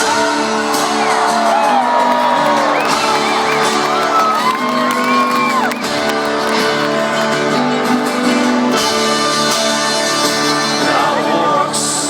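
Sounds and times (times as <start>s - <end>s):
crowd cheering: 0.0s - 8.4s.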